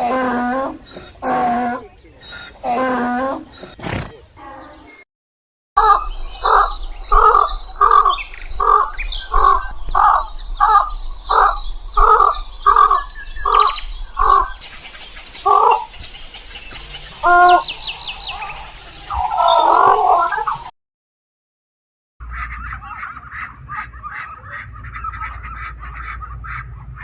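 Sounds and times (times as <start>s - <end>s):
animal harsh calls: 0.0s - 4.3s, 16.8s - 20.7s
small birds chirping: 0.6s - 5.0s, 5.8s - 20.7s.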